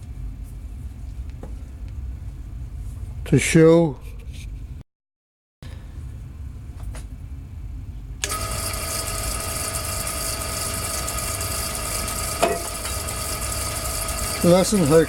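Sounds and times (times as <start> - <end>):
milling machine motor whine: 8.2 - 15.0.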